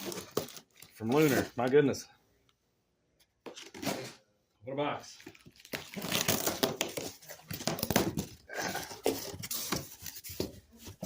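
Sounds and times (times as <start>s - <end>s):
cardboard rustling and crinkling: 0.0s - 1.9s, 5.3s - 11.0s.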